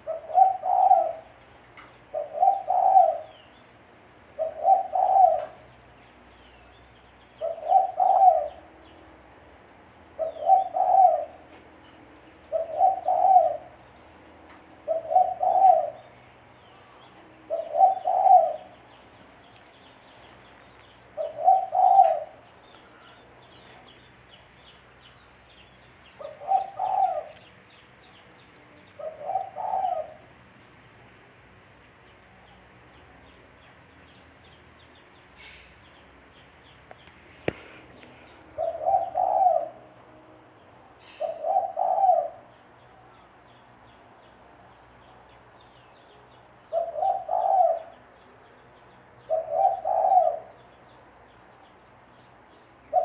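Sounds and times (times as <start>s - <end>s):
dove cooing: 0.0s - 1.4s, 2.1s - 3.4s, 4.3s - 5.6s, 7.4s - 8.7s, 10.2s - 11.5s, 12.5s - 13.8s, 14.8s - 16.1s, 17.4s - 18.9s, 21.1s - 23.2s, 26.2s - 27.4s, 29.0s - 30.3s, 38.5s - 39.9s, 41.0s - 42.6s, 46.7s - 48.0s, 49.2s - 50.6s.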